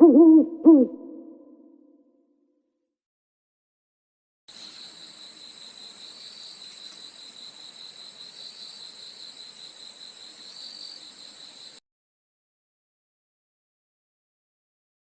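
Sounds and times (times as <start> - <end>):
crickets chirping: 4.5 - 11.8.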